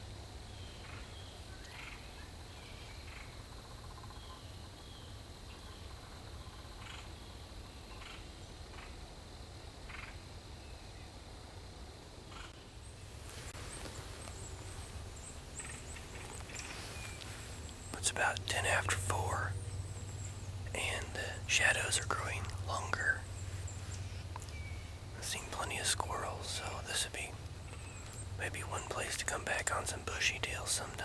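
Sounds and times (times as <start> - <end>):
leaves rustling: 12.8 - 18.4, 19.1 - 29.1.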